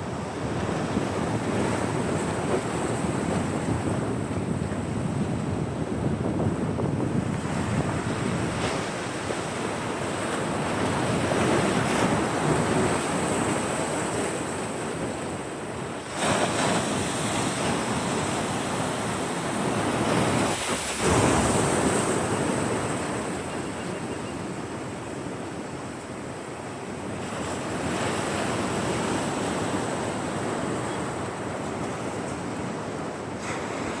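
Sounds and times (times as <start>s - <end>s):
ocean surf breaking: 0.0s - 23.8s, 27.1s - 34.0s
wind buffeting microphone: 0.0s - 26.3s.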